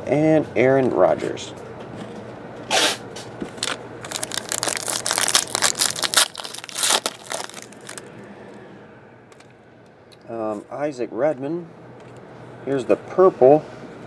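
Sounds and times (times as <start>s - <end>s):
wrapper crinkling: 3.5s - 8.1s.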